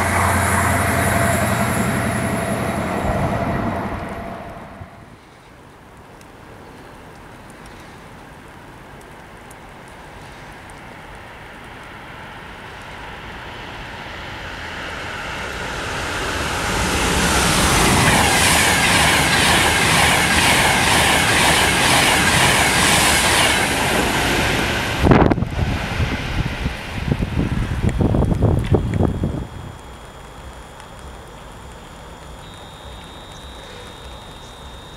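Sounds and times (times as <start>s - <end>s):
train passing: 0.0s - 5.6s, 11.9s - 29.7s
train wheels clattering over rails: 16.2s - 25.5s.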